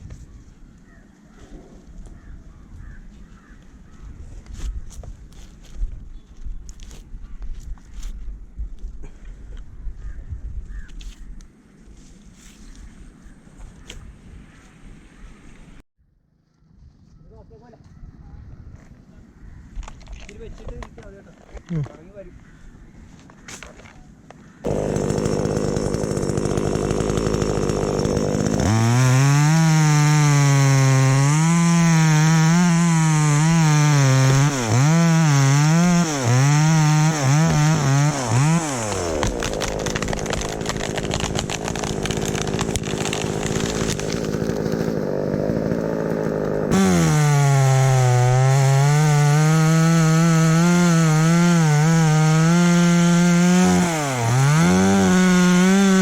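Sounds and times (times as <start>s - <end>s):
chainsaw idling and cutting wood: 24.6s - 56.0s.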